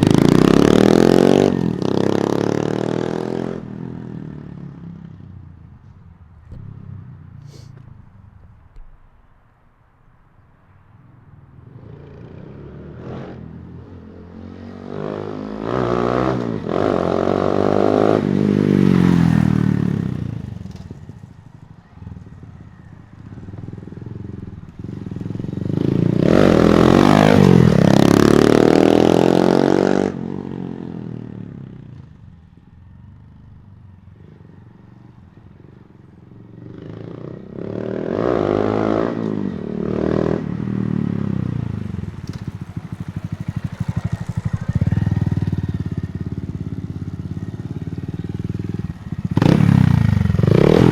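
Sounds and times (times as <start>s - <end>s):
motorcycle riding past: 0.0s - 8.8s, 11.1s - 50.9s.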